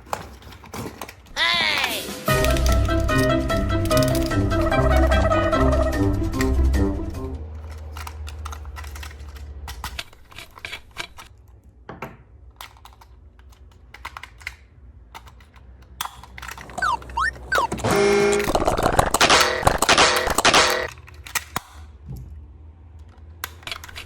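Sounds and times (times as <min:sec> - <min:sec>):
plastic toy pieces clicking: 0:00.0 - 0:05.3, 0:07.4 - 0:11.6, 0:12.3 - 0:22.0, 0:22.9 - 0:24.0
pitched toy sound: 0:01.3 - 0:06.6, 0:16.7 - 0:17.9.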